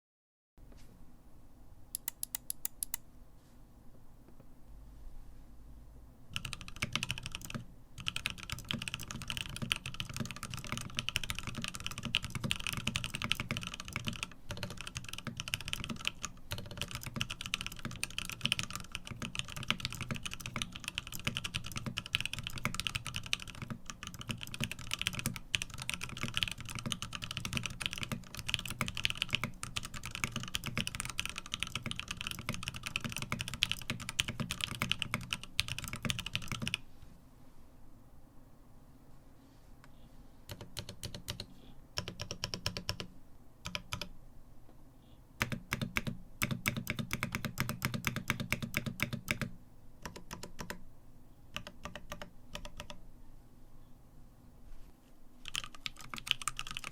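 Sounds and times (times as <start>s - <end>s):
fast mechanical keyboard typing: 6.3s - 36.8s, 40.5s - 44.1s, 45.4s - 50.8s, 51.6s - 53.0s, 55.4s - 56.9s.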